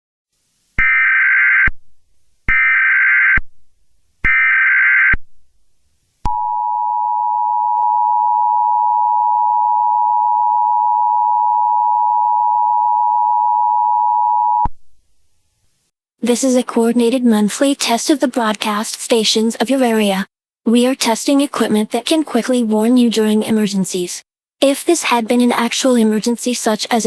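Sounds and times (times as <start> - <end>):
data tone blasts: 4.2 - 5.2.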